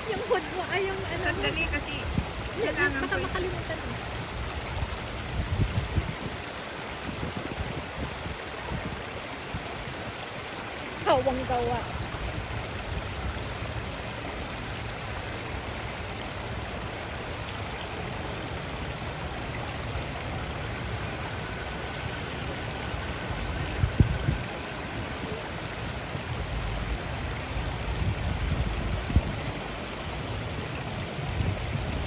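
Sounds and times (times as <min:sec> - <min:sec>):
running water rushing: 0:00.0 - 0:32.0
short high beeps: 0:26.8 - 0:27.0, 0:27.8 - 0:28.0, 0:28.8 - 0:29.6.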